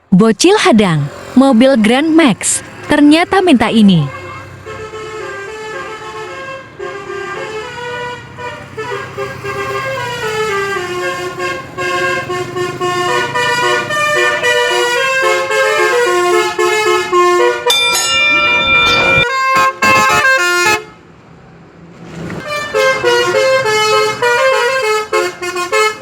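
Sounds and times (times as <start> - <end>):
musical vehicle horn playing a tune: 4.1 - 21.0, 22.4 - 26.0.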